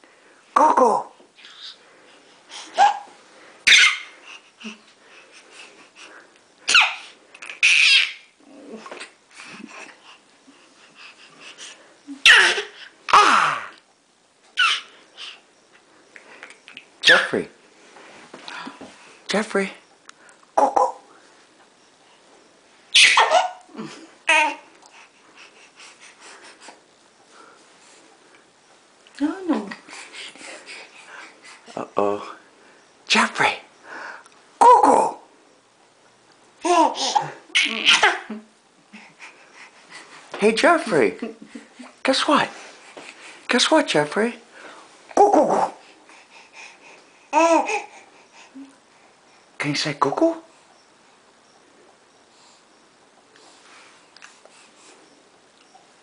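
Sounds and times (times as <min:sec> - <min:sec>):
baby screeching and squealing: 0:02.8 - 0:04.1, 0:06.7 - 0:08.4, 0:12.2 - 0:13.8, 0:14.6 - 0:15.0, 0:22.9 - 0:23.6, 0:36.7 - 0:38.3.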